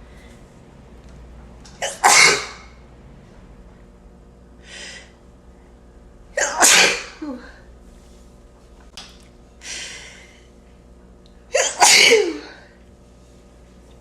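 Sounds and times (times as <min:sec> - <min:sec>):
person sneezing: 0:01.8 - 0:02.7, 0:06.4 - 0:07.7, 0:11.5 - 0:12.8
sharp intake of breath: 0:04.6 - 0:05.2.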